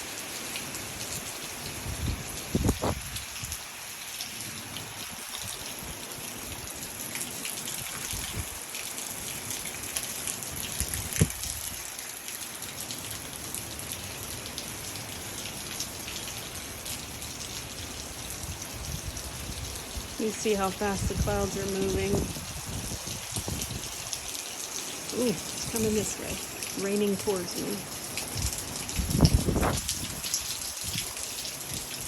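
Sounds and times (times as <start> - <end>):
heavy rain spattering: 0.0 - 32.0
wind gusts rumbling on microphone: 1.8 - 3.6, 7.8 - 8.6, 10.8 - 11.8, 20.8 - 24.2, 28.3 - 31.1.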